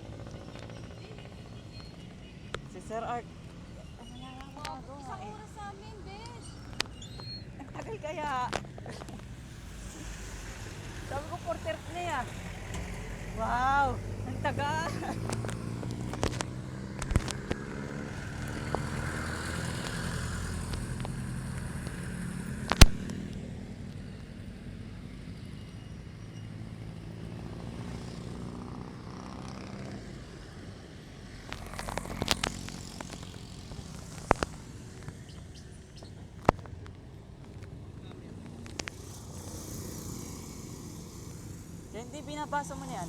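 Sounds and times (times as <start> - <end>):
vehicle engines passing: 0.0 - 43.0
sharp clicks: 15.2 - 23.4, 31.4 - 37.7.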